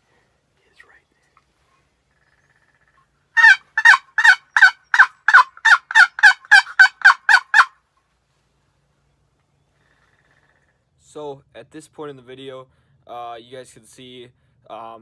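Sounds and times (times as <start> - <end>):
turkey call yelps: 2.2 - 7.8.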